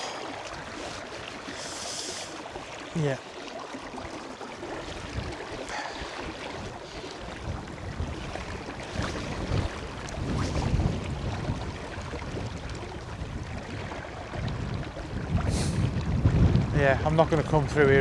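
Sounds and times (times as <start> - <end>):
river water rushing: 0.0 - 7.6
wind buffeting microphone: 4.6 - 18.0.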